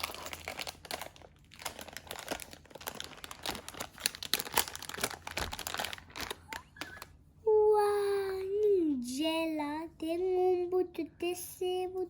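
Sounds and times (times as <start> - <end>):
packaging crinkling and rustling: 0.0 - 7.2.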